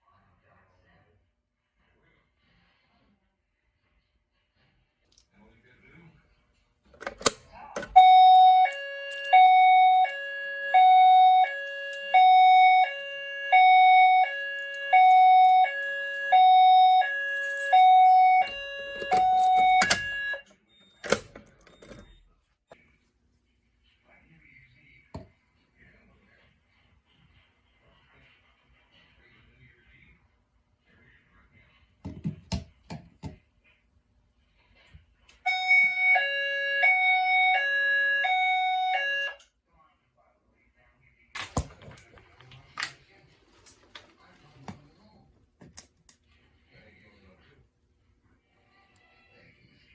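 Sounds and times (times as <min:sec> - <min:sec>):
fire alarm hi-lo tone: 0:07.9 - 0:21.2, 0:35.4 - 0:39.5.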